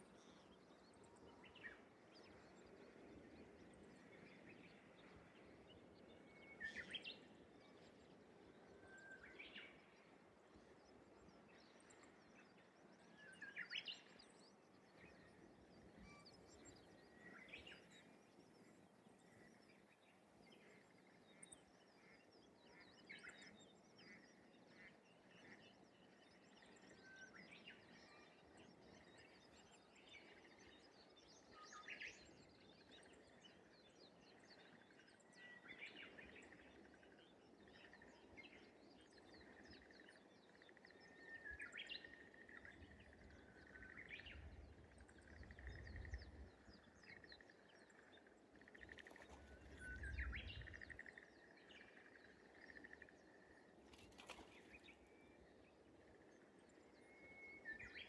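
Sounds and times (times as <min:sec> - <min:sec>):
small birds chirping: 0:10.8 - 0:58.0.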